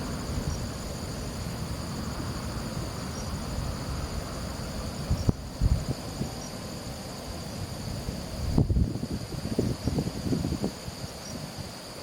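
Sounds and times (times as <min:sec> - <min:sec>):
crickets chirping: 0:00.0 - 0:12.0
wind rumble on microphone: 0:00.0 - 0:12.0.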